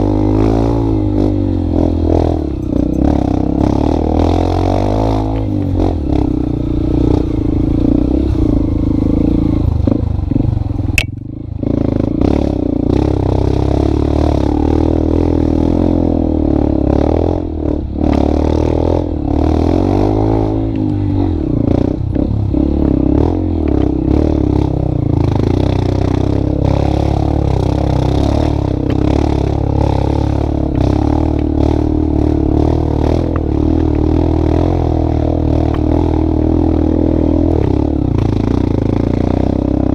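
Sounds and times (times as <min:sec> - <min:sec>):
sharp click: 0:11.0 - 0:11.2.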